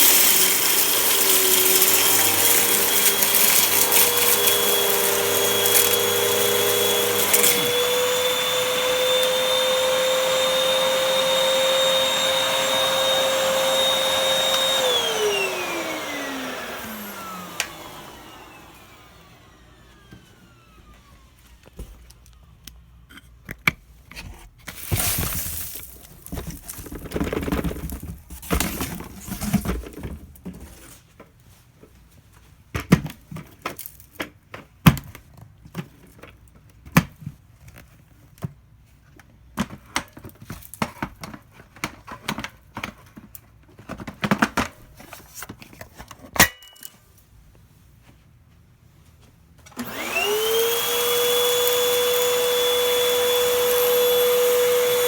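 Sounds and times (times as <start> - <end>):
handling clicks and rustling: 0.0 - 9.4, 23.5 - 30.7
vacuum cleaner motor whine: 0.0 - 22.4, 24.8 - 29.6, 49.7 - 55.0.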